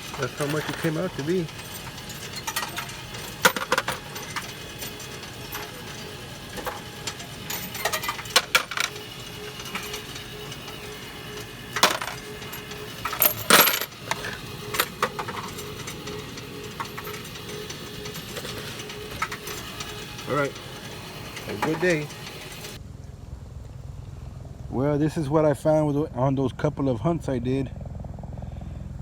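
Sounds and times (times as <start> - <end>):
coins clinking together: 0.0 - 22.8.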